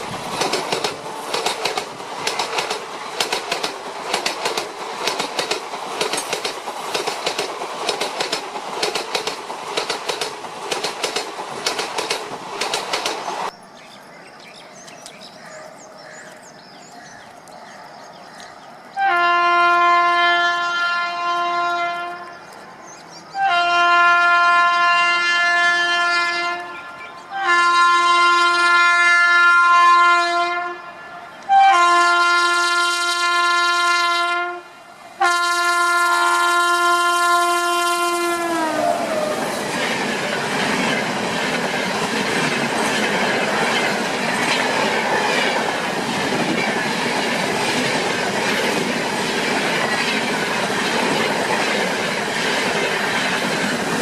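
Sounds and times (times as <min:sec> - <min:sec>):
train clattering on track: 0:00.0 - 0:13.5, 0:38.4 - 0:54.0
locomotive horn blasts: 0:19.0 - 0:22.4, 0:23.4 - 0:39.0.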